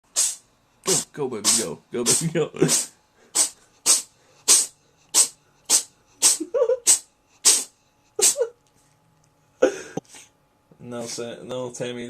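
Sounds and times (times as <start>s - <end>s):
cat sneezing: 0.1s - 8.6s.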